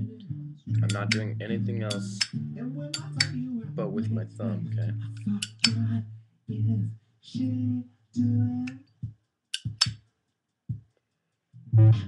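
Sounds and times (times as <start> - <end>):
music with singing voice: 0.0 - 9.0
lighter lid clicking: 5.4 - 5.7.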